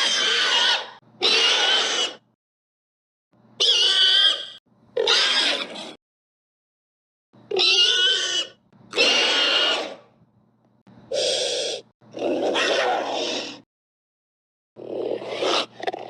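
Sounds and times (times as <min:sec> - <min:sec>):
creature calls: 0:00.0 - 0:02.2, 0:07.5 - 0:10.1, 0:11.1 - 0:13.6, 0:14.8 - 0:16.0.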